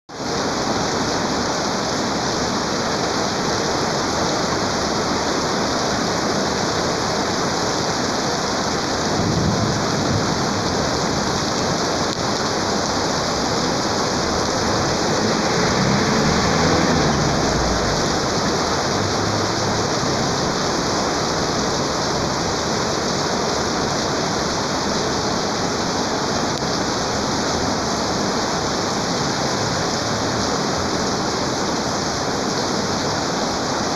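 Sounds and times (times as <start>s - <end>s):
heavy rain pouring: 0.1s - 33.9s
low rumble: 13.2s - 20.4s.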